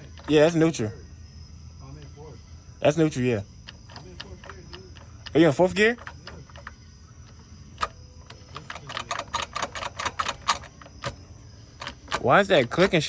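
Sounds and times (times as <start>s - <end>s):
loud mechanical clicking: 3.6s - 13.0s.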